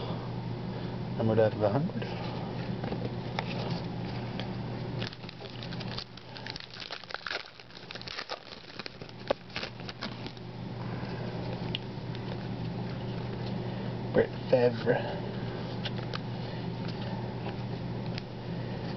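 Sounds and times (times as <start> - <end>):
low steady hum: 0.0 - 18.9
foil card wrappers crinkling: 5.0 - 10.5.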